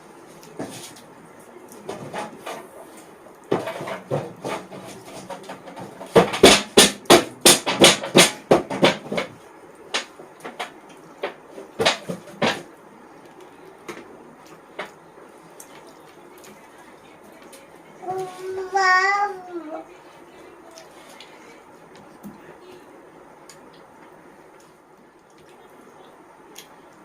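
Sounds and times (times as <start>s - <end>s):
drum beaten by child: 5.7s - 9.3s.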